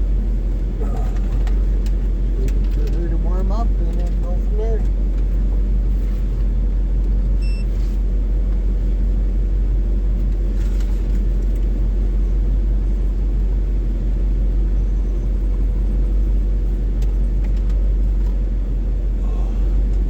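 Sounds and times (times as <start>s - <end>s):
van engine idling: 0.0s - 20.0s
short high beep: 7.4s - 7.7s.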